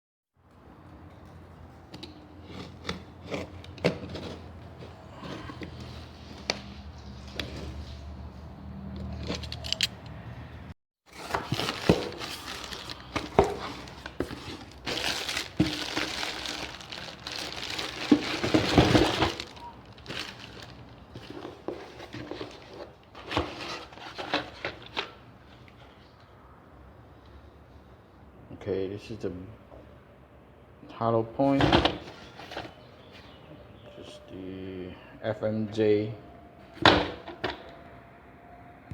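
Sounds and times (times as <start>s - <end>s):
packaging rustling and scraping: 2.5s - 8.1s, 11.1s - 26.0s, 32.0s - 33.4s.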